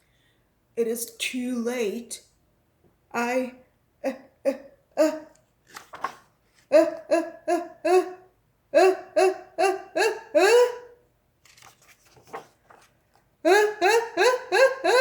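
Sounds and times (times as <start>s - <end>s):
child sobbing: 4.0s - 5.3s.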